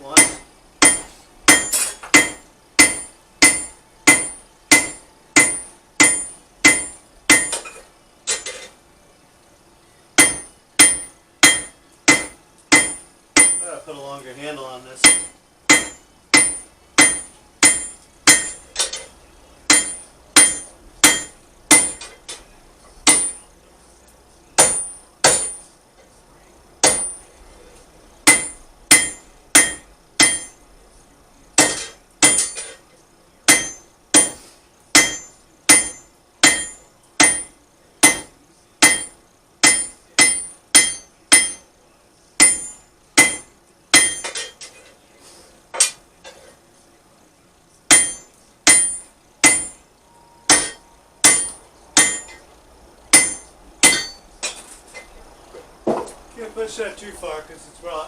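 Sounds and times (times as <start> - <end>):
hammer striking iron on anvil: 0.0 - 8.6, 10.2 - 13.8, 15.0 - 19.1, 19.7 - 22.4, 23.0 - 23.4, 24.6 - 25.7, 26.8 - 27.3, 28.2 - 30.6, 31.6 - 32.8, 33.5 - 41.7, 42.4 - 44.6, 47.9 - 49.8, 50.4 - 52.4, 53.1 - 54.6.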